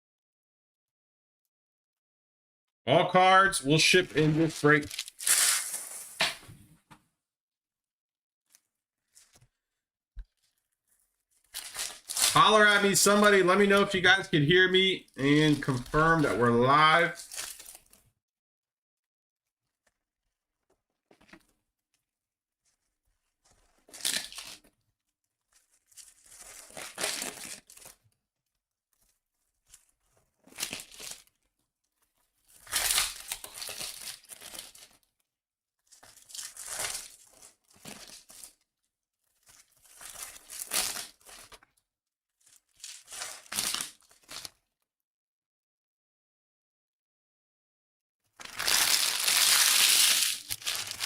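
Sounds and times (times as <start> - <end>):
plastic packaging tearing: 4.2 - 6.3, 11.5 - 13.9, 15.1 - 18.0, 23.8 - 24.6, 25.5 - 28.0, 30.5 - 31.4, 32.4 - 35.0, 35.9 - 38.6, 39.4 - 41.6, 42.4 - 44.6, 48.4 - 51.0.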